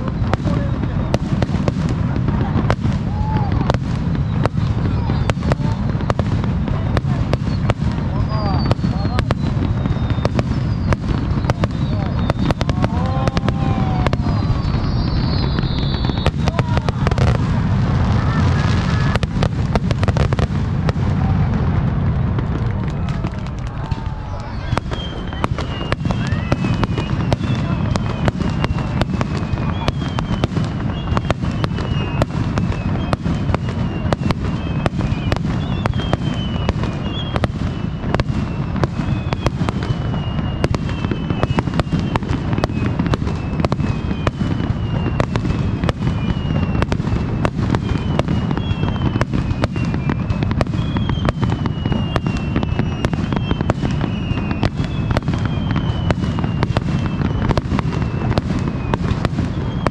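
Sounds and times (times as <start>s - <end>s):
falling firework whistles: 0.0s - 59.9s.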